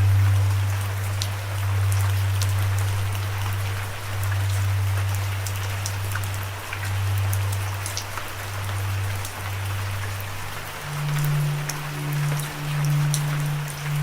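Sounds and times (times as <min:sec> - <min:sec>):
loud deep hum: 0:00.0 - 0:05.9
steady rain: 0:00.0 - 0:14.0.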